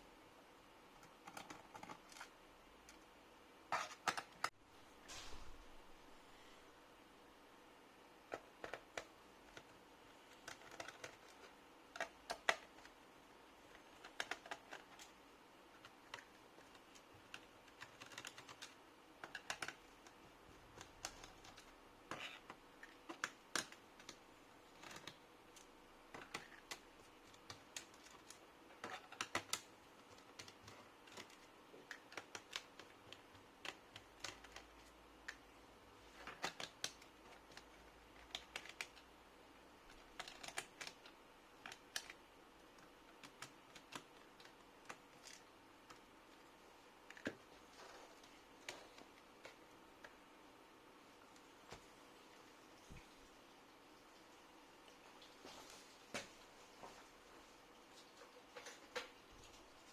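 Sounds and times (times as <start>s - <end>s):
laptop parts clicking and tapping: 1.0s - 3.1s, 3.7s - 5.8s, 8.3s - 13.0s, 13.7s - 35.5s, 36.1s - 39.1s, 39.7s - 50.2s.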